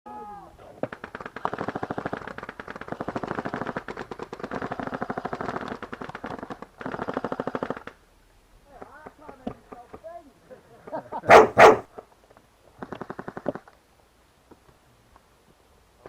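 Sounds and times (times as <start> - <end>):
automatic gunfire: 11.3 - 11.8.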